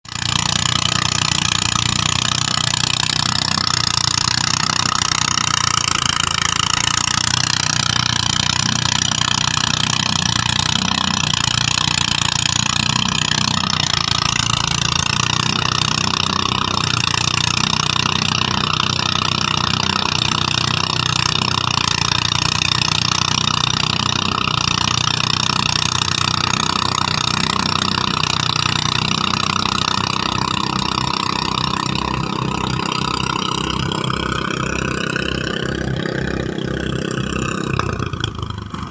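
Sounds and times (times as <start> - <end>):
threshing machine engine drone: 0.0 - 38.9.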